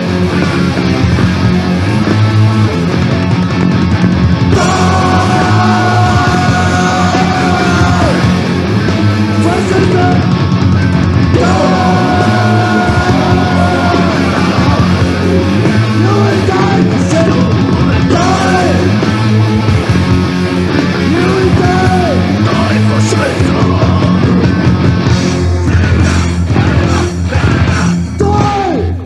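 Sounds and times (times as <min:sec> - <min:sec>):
punk rock band playing: 0:00.0 - 0:29.0
person yelling vocals: 0:04.6 - 0:08.3, 0:11.4 - 0:15.0, 0:28.2 - 0:29.0.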